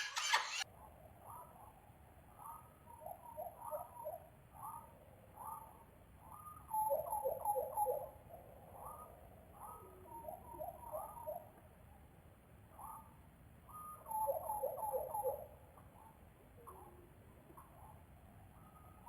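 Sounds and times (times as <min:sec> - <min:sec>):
tropical birds calling: 0:00.0 - 0:00.6.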